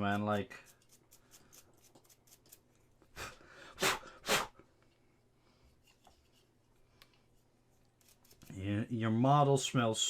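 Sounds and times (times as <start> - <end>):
sharp puffs of breath: 3.2 - 4.6.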